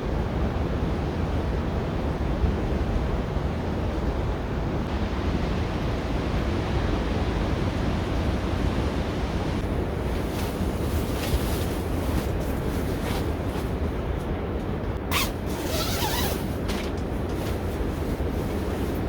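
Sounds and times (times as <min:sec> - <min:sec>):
rustling crackles: 0:09.6 - 0:19.0.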